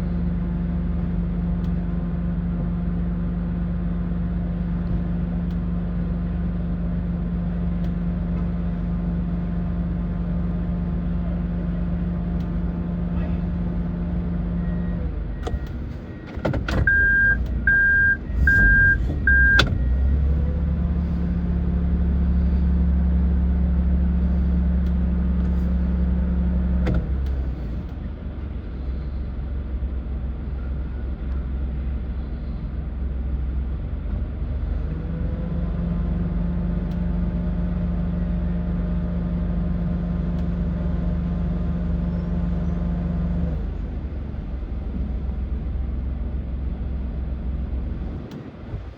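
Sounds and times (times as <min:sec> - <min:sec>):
car engine running: 0:00.0 - 0:48.9
short electronic beeps: 0:16.8 - 0:19.7.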